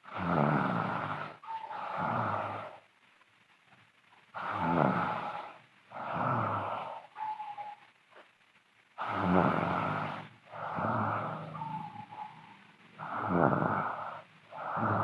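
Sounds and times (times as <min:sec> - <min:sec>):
girl snoring loudly: 0:00.1 - 0:02.7, 0:04.4 - 0:07.0, 0:09.0 - 0:11.6, 0:13.0 - 0:15.0
faint whistle in snores: 0:09.1 - 0:15.0.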